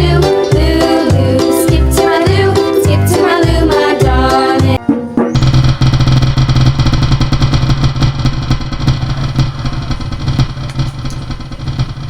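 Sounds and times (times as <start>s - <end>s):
low hum: 5.4s - 12.0s
small engine idling: 5.4s - 12.0s.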